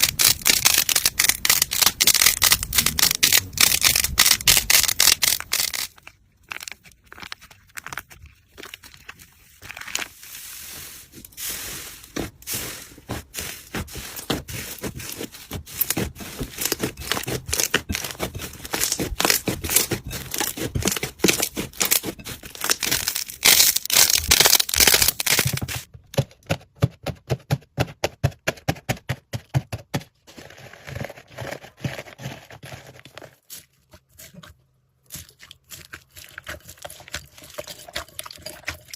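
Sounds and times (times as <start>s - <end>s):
slime squeezed crackling and popping: 0.0s - 9.2s, 16.6s - 25.6s.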